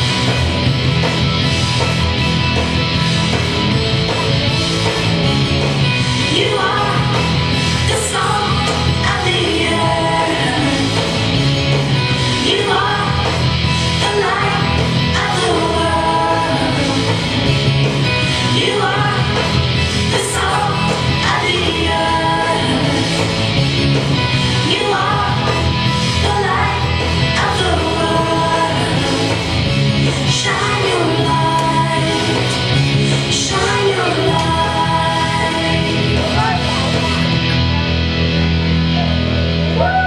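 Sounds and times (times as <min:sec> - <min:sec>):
rock song with singer and band: 0:00.0 - 0:40.0.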